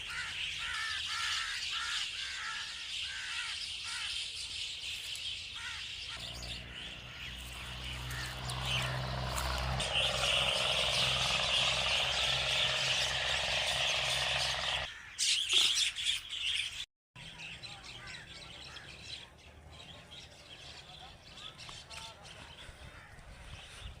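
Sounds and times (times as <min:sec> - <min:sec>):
myna birds chirping: 0:00.0 - 0:24.0
steady low hum: 0:06.2 - 0:14.9.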